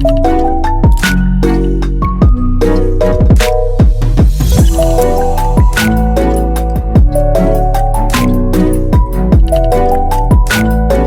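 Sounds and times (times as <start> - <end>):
crisp high percussion: 0.0 - 11.0
electronic music: 0.0 - 11.0
deep bass drum hits: 3.2 - 6.1
sustained synth notes: 4.4 - 8.0.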